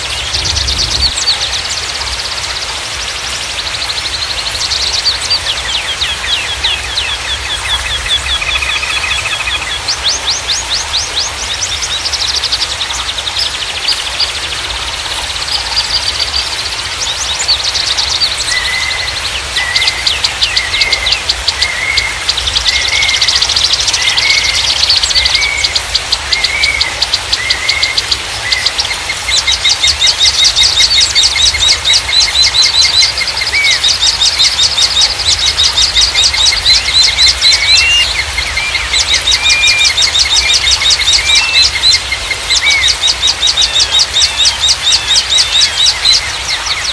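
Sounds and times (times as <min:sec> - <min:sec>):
songbirds chirping and trilling: 0:00.0 - 0:46.9
bird whistling: 0:35.7 - 0:46.9.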